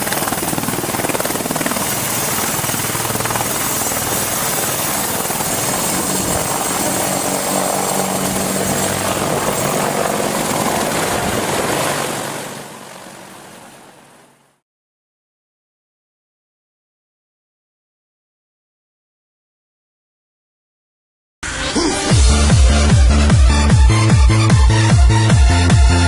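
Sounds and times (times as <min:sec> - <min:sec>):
helicopter rotor and turbine noise: 0:00.0 - 0:14.6, 0:21.5 - 0:26.0.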